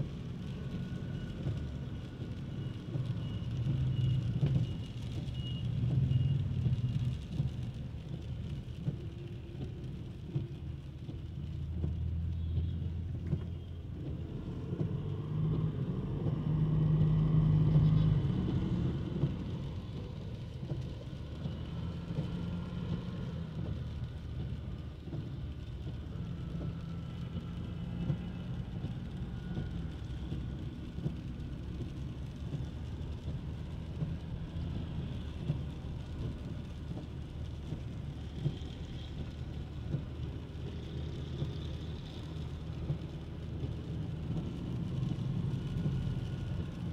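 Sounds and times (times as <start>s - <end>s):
vehicles passing: 10.2s - 46.9s.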